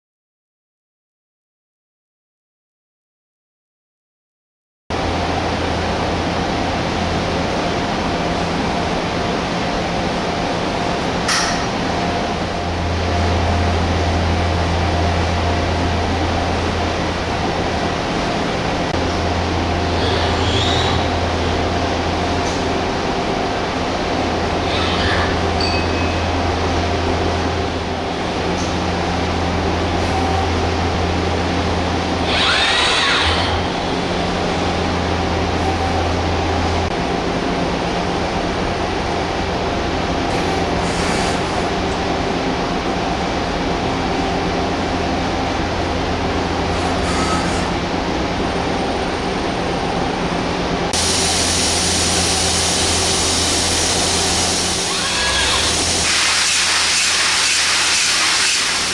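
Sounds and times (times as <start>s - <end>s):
lathe machine hum with motor whine: 26.2s - 58.9s.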